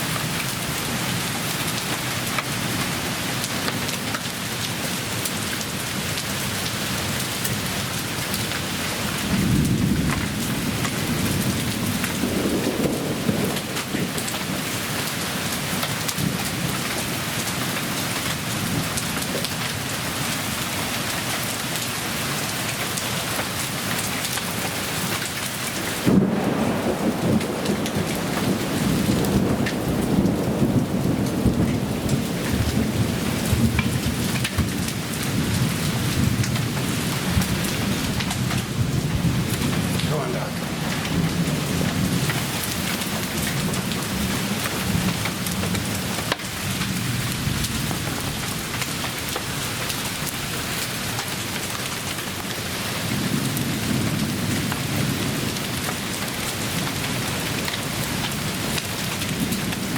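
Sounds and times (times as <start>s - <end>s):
rain and hail pelting: 0.0s - 59.9s
thunder rumbling: 9.0s - 14.7s, 26.0s - 51.2s
loud thunderclap: 9.2s - 14.3s, 26.0s - 49.4s.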